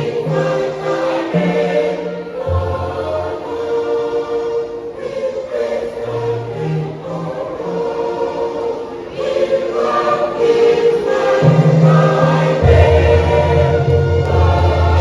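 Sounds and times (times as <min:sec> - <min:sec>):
children's choir singing gospel: 0:00.0 - 0:15.0
low bass notes: 0:12.6 - 0:15.0.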